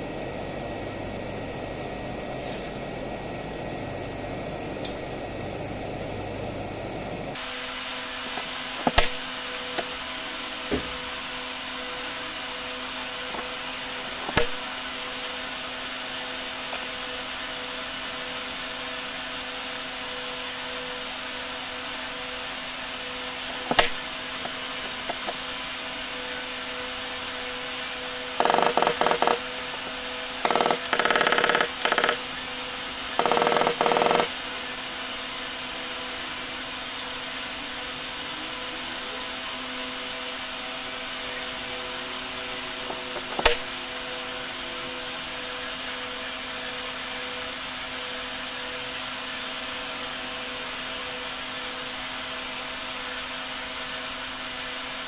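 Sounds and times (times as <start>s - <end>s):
workshop machine humming: 0.0s - 55.0s
loud bursts of tool noise: 28.0s - 34.5s.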